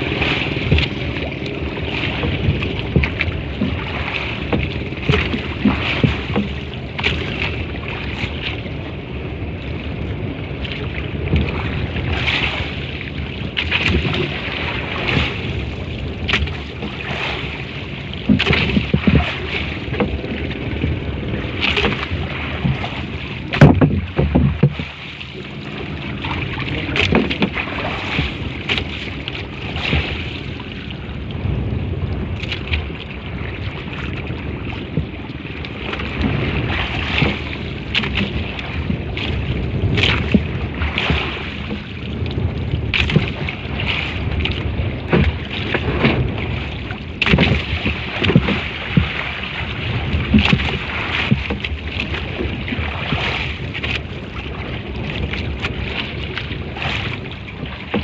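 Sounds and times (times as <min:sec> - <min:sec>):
boat engine rumble: 0:00.0 - 0:58.0
water noise: 0:00.0 - 0:58.0
wind noise: 0:00.0 - 0:58.0
scattered knocks: 0:23.5 - 0:24.9.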